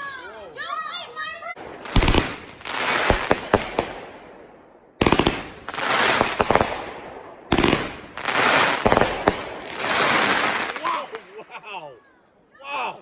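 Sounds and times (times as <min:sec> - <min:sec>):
fireworks crackling pops: 0:01.6 - 0:04.4, 0:05.0 - 0:11.4
fireworks bangs: 0:01.6 - 0:11.5.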